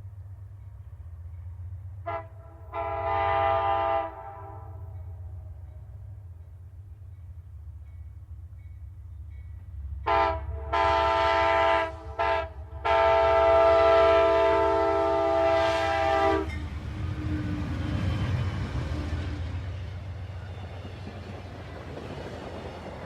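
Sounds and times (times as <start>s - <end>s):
low train rumble: 0.0s - 23.0s
train air horn: 2.0s - 5.5s, 10.0s - 16.7s.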